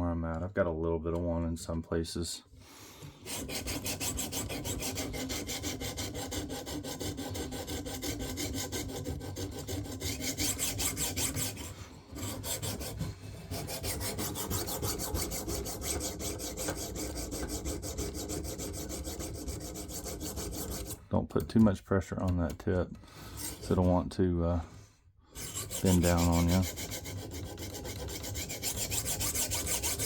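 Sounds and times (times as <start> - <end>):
sharpening stone rasping on knife: 25.4 - 30.0.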